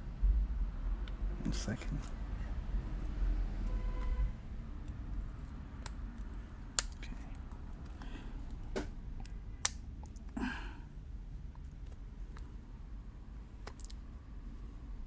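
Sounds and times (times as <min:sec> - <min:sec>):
plastic clips snapping loose: 0:05.8 - 0:07.1.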